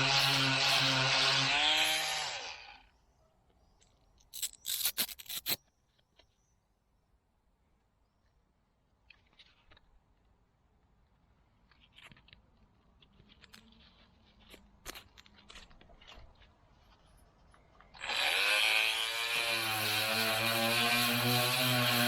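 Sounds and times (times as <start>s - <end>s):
oscillating multi-tool buzzing: 0.0s - 2.8s, 4.4s - 5.6s, 18.0s - 22.0s.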